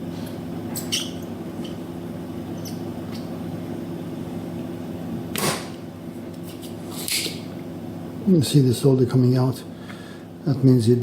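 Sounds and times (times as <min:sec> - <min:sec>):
steady low hum: 0:00.0 - 0:11.0
desoldering pump snap and whoosh: 0:05.3 - 0:05.8.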